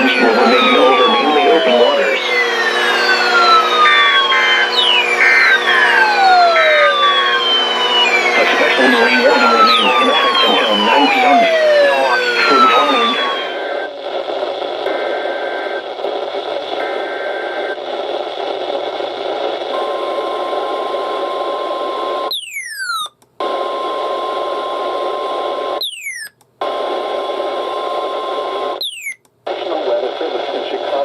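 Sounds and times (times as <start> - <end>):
data bursts: 0.0 - 13.6
warning alarm tone: 0.0 - 13.7
radio static hiss: 0.0 - 16.6, 29.5 - 31.0
sharp falling chirp: 25.8 - 26.3, 28.8 - 29.2.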